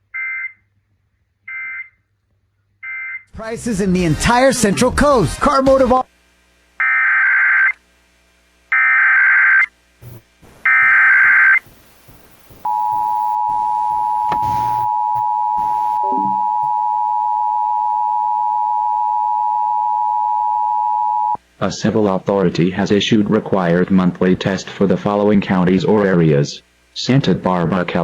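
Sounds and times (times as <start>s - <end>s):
warbling digital data tones: 10.0s - 17.0s
two-tone attention signal: 12.7s - 21.4s.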